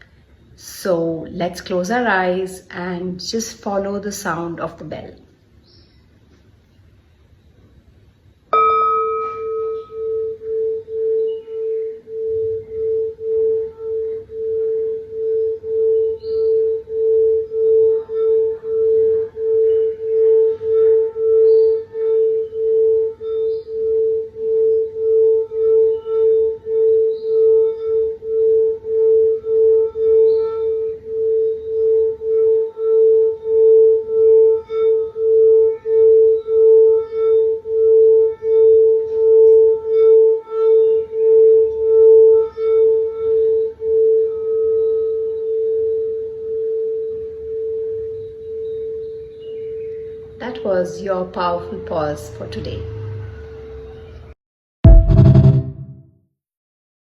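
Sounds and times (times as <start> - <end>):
singing bowl ringing: 8.5 - 54.0.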